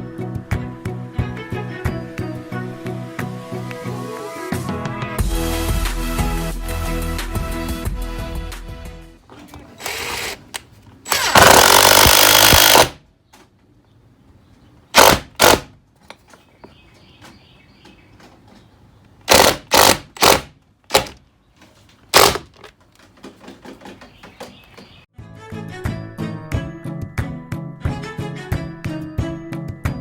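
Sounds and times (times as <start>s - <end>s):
power tool driving fasteners: 9.5s - 13.0s, 14.9s - 15.7s, 19.2s - 21.2s, 22.1s - 24.8s.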